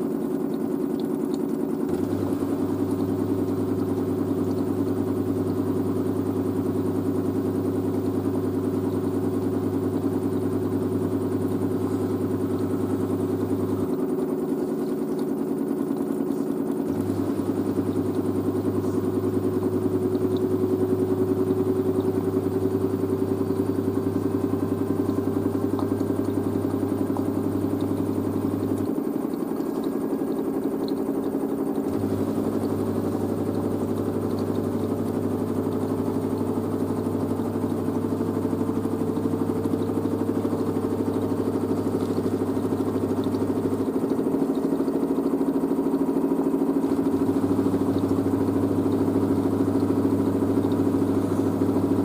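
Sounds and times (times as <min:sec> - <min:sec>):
washer-dryer humming and whining: 0:00.0 - 0:52.0
deeper hum: 0:16.4 - 0:45.2.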